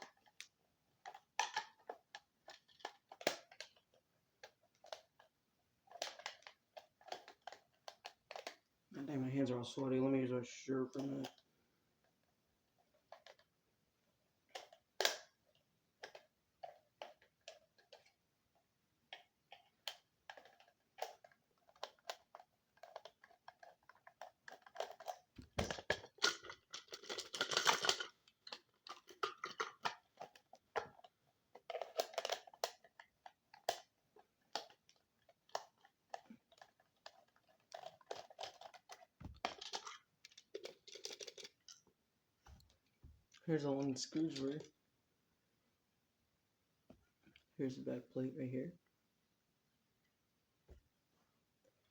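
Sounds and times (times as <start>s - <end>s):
handling plastic parts: 19.1s - 44.7s.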